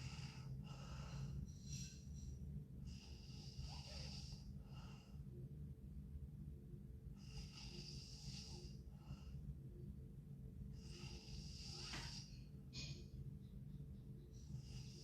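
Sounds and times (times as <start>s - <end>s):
girl breathing with light snore: 0.0s - 5.3s, 7.1s - 9.5s, 10.7s - 12.9s, 14.4s - 15.0s
faint low hum: 0.0s - 15.0s.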